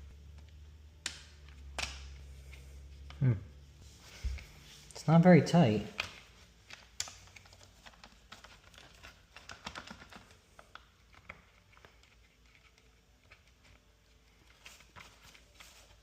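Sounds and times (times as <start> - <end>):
plastic parts clicking and tapping: 6.0 - 13.8.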